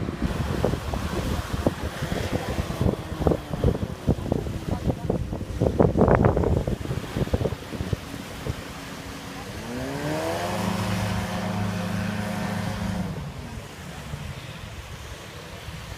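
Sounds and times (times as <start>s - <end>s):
engine drone: 0.0s - 15.9s
water noise: 0.0s - 15.9s
wind: 0.0s - 15.9s.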